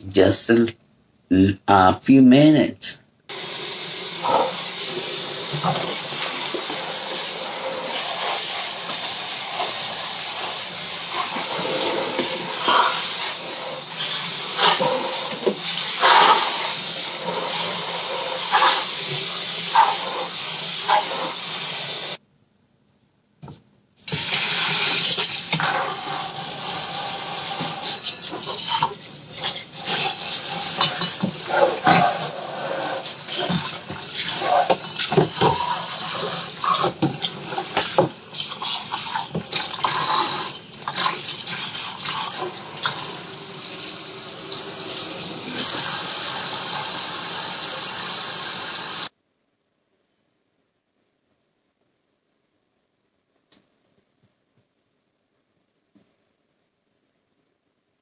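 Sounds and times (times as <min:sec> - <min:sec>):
tap running into sink: 0:24.1 - 0:49.0.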